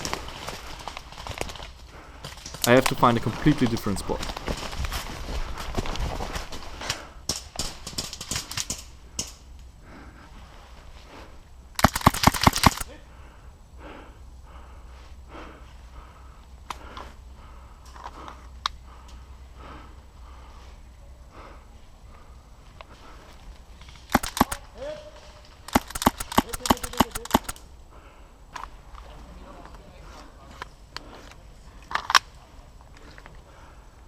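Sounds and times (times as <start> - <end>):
rapid airsoft gunfire: 11.8 - 12.9, 24.1 - 24.6, 25.7 - 27.6.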